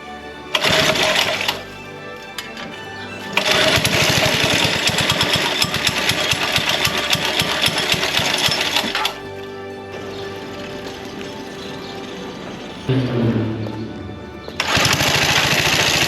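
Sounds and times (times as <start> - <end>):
music: 0.0 - 16.0
small engine running: 3.4 - 9.4, 14.6 - 16.0.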